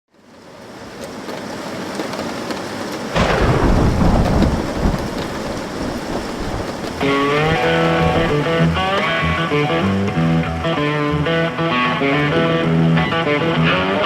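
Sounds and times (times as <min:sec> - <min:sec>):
steady rain: 0:00.1 - 0:14.0
thunderclap rumbling: 0:03.1 - 0:11.2.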